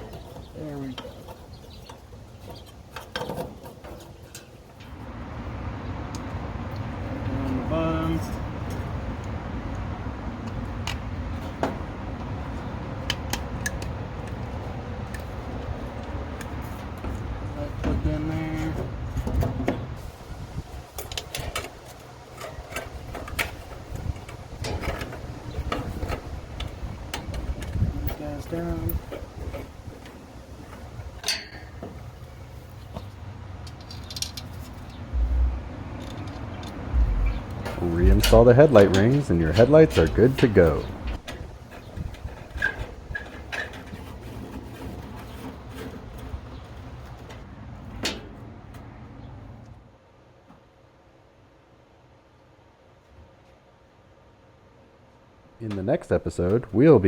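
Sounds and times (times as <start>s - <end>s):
dull low thumps: 35.1s - 36.0s, 36.9s - 38.6s
steady low hum: 35.1s - 41.3s.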